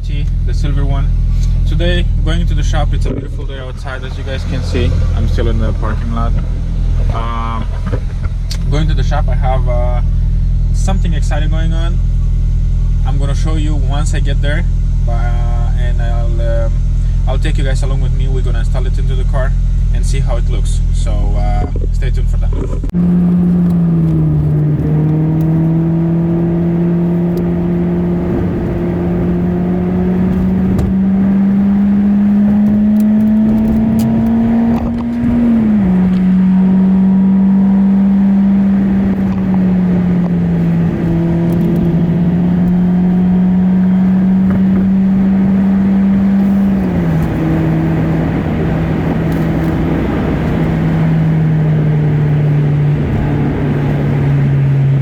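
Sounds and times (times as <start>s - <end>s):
car engine accelerating: 0.0s - 55.0s
road rumble: 0.0s - 55.0s.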